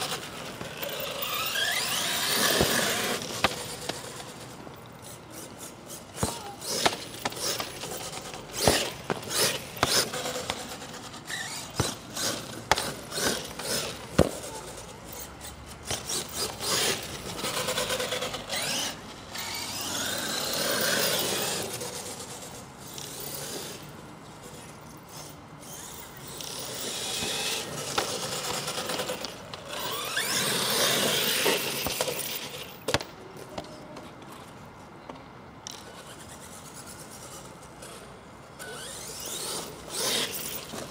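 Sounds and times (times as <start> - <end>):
tyre noise: 0.0 - 22.5
rc truck motor whine: 0.0 - 33.0, 35.6 - 40.9.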